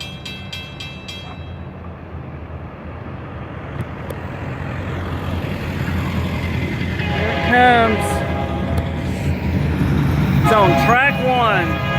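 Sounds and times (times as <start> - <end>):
crossing bell clanging: 0.0 - 1.9, 6.7 - 8.8, 10.3 - 11.9
approaching train rumble: 0.0 - 11.9.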